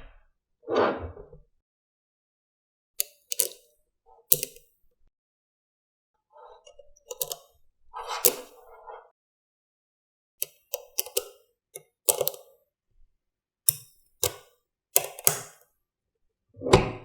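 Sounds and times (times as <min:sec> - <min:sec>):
clicks and knocks of small hard parts: 0:03.0 - 0:03.7, 0:12.1 - 0:12.5, 0:13.7 - 0:15.6.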